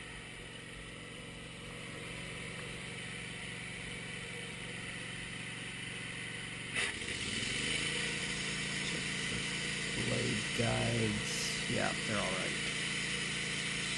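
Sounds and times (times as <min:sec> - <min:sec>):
sawmill engine idling: 0:00.0 - 0:13.9.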